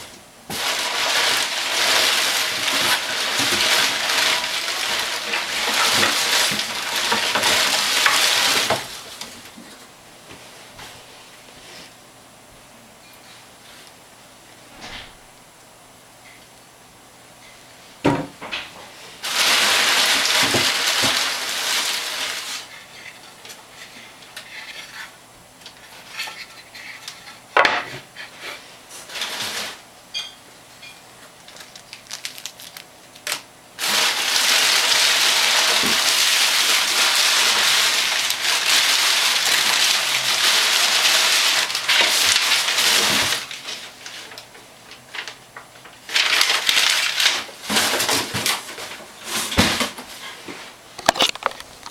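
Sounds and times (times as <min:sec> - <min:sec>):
packaging rustling and crinkling: 0:00.0 - 0:09.8, 0:19.2 - 0:24.0, 0:29.0 - 0:29.8, 0:31.4 - 0:51.9.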